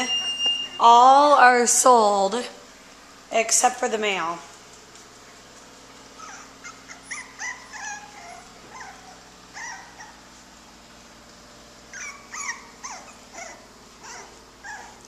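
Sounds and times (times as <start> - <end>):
puppies whimpering and yipping: 6.1 - 10.4, 11.9 - 15.0.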